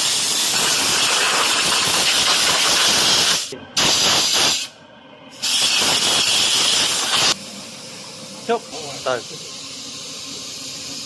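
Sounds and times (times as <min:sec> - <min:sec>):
compressed air hissing from blow gun: 0:00.0 - 0:04.7, 0:05.4 - 0:07.4.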